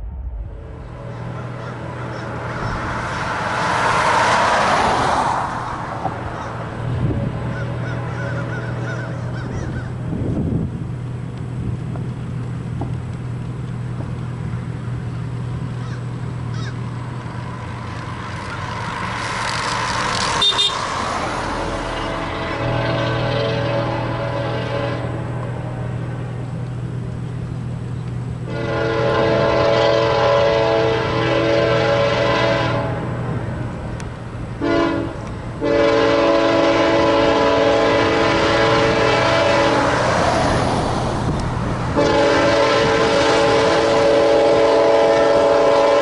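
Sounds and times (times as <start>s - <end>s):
locomotive engine drone: 0.0s - 46.0s
train horn: 20.1s - 25.8s, 28.4s - 33.3s, 34.6s - 40.4s, 41.9s - 46.0s.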